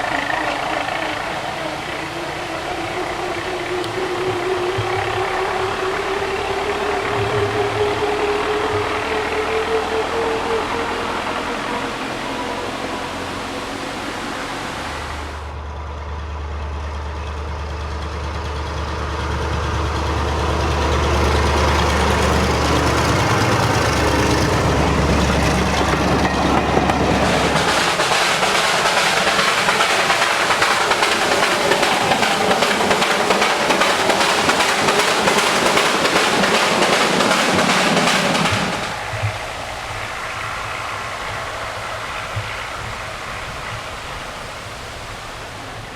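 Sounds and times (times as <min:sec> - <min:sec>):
train running: 0:00.0 - 0:45.9
loud even rushing noise: 0:23.0 - 0:45.9.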